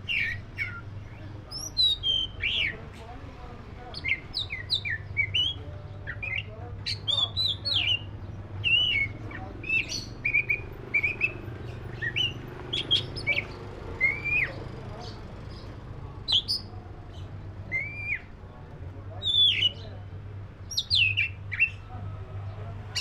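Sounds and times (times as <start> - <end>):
bird singing whistled notes: 0.0 - 2.8, 4.0 - 14.6, 17.7 - 18.3, 19.2 - 19.8, 20.7 - 21.9.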